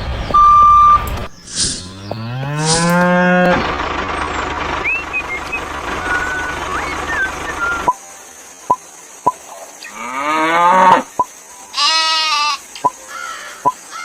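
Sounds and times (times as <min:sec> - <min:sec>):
high whistled chirps: 0:00.0 - 0:03.7, 0:04.3 - 0:08.1
farmyard background noise: 0:00.0 - 0:14.0
cow mooing: 0:01.8 - 0:03.7, 0:09.9 - 0:11.1.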